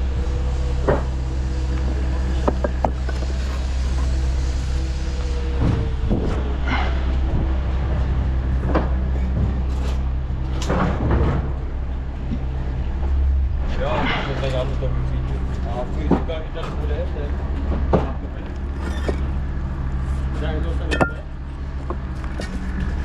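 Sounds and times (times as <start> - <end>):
low engine-like hum: 0.0 - 23.0
scraping or rustling noises: 2.4 - 7.0.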